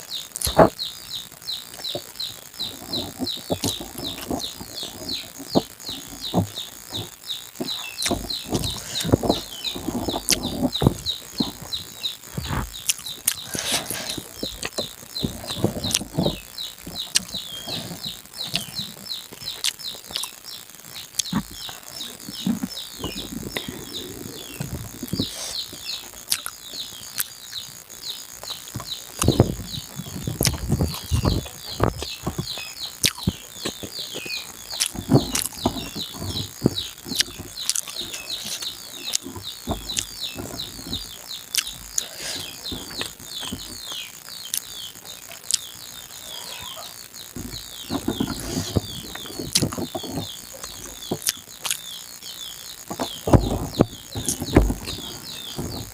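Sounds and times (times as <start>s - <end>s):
birds chirping: 0.0s - 55.9s
person chewing and lip-smacking: 0.3s - 0.8s, 2.8s - 11.8s, 12.4s - 18.7s, 19.4s - 20.4s, 22.4s - 27.3s, 28.4s - 40.1s, 41.5s - 42.1s, 48.4s - 50.3s, 51.1s - 51.9s.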